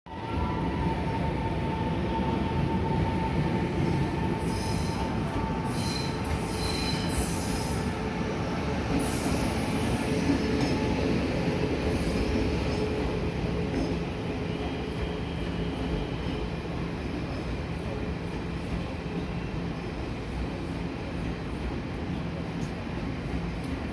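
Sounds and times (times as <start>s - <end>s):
train wheels rumbling on rail: 0.2s - 23.9s
high-pitched wheel squeal: 4.4s - 7.9s.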